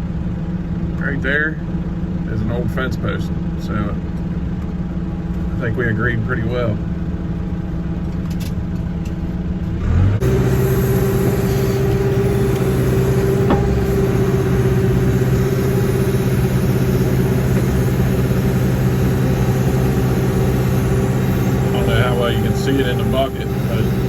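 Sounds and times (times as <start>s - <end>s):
backhoe diesel engine revving: 9.4s - 24.0s.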